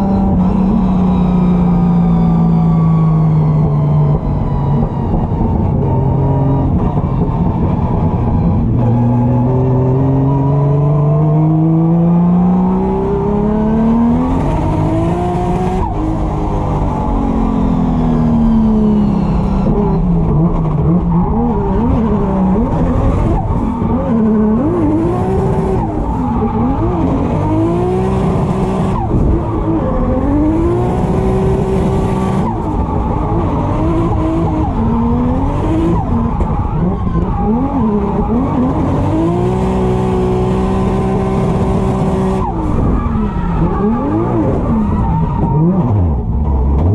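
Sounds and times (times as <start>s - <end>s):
car engine revving hard: 7.4s - 46.9s
tires sliding and squealing: 18.4s - 46.9s.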